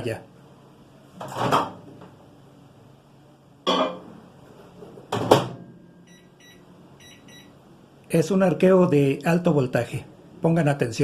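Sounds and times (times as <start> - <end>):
microwave oven humming: 0.0 - 11.0.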